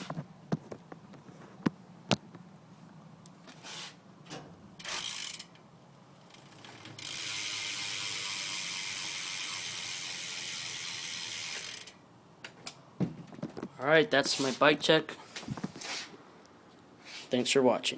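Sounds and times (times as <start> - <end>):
bicycle hub ratcheting buzz: 4.8 - 12.0.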